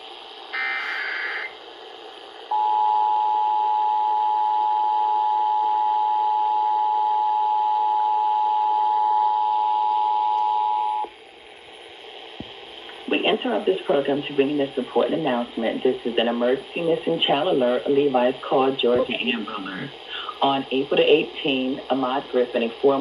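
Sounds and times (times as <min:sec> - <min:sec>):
buzzy data burst: 0:00.0 - 0:02.0
two-tone alert signal: 0:00.6 - 0:01.5.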